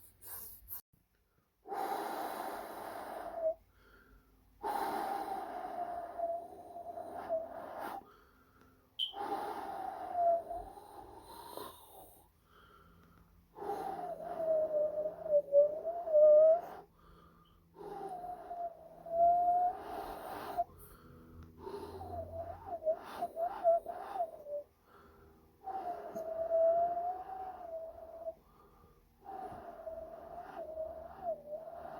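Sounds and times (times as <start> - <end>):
breathy whistle-like tone: 1.8 - 31.9.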